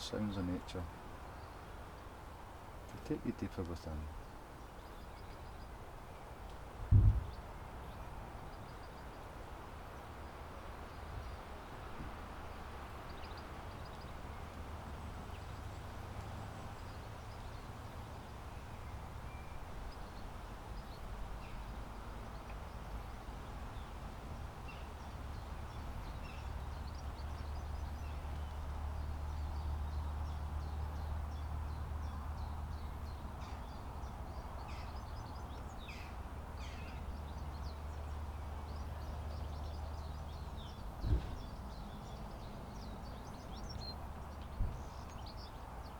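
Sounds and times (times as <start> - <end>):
sharp knock: 6.9 - 7.4
low rumble: 6.9 - 7.5.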